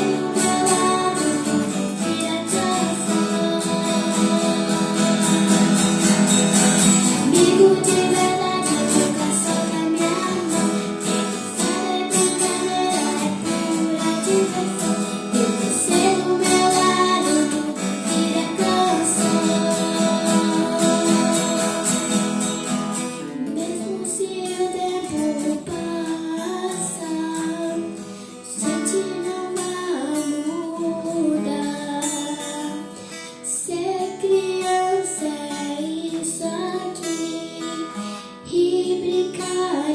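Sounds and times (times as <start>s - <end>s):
acoustic guitar: 0.0s - 39.9s
woman singing: 0.0s - 39.9s.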